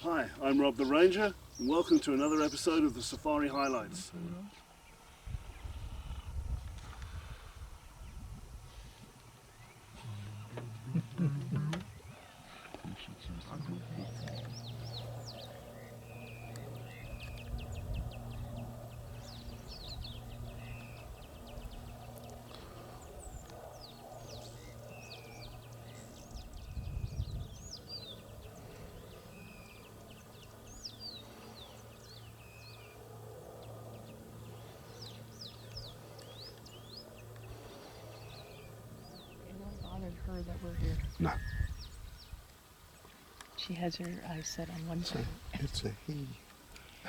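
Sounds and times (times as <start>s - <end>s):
birds chirping and whistling: 0.0s - 3.9s, 13.5s - 33.0s, 33.6s - 42.4s
low steady hum: 9.4s - 47.0s.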